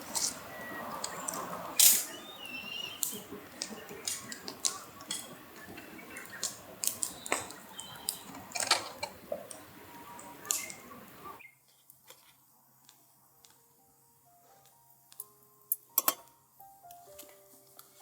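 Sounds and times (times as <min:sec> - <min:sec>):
small clicks and clinks of handling: 0:14.6 - 0:16.3.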